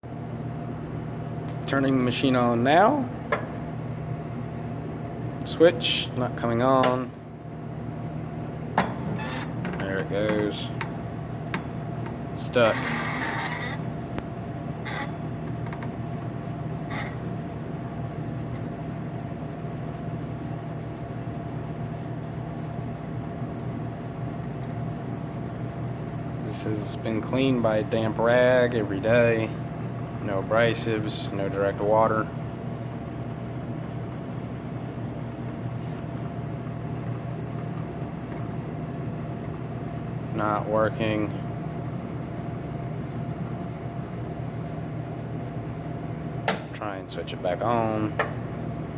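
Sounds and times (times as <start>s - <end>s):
short scratchy noises: 12.5s - 13.9s.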